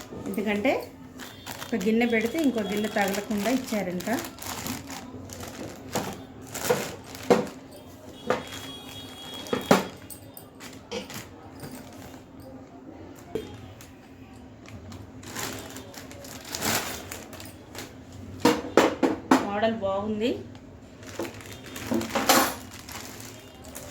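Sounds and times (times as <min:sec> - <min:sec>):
rustling: 0:21.0 - 0:23.9.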